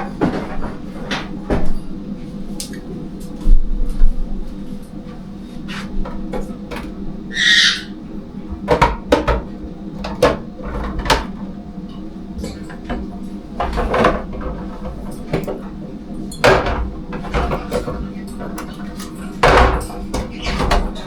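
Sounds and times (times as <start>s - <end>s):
steady low hum: 0.0s - 21.0s
dishes and containers knocking: 8.7s - 11.4s.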